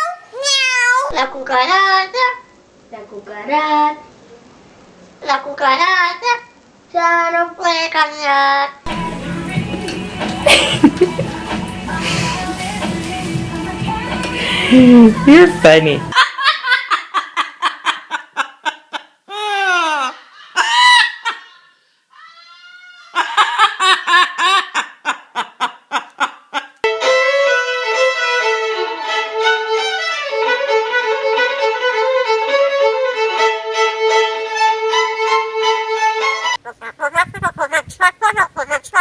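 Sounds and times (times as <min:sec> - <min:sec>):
bowed string music: 0:08.9 - 0:16.1, 0:26.9 - 0:36.6
parrot chattering: 0:36.6 - 0:39.0.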